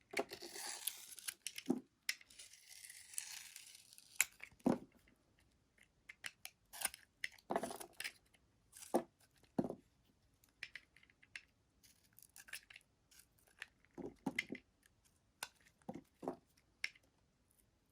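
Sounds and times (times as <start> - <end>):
knife cutting through soap: 0.1 - 1.7, 2.3 - 4.3, 6.7 - 8.0.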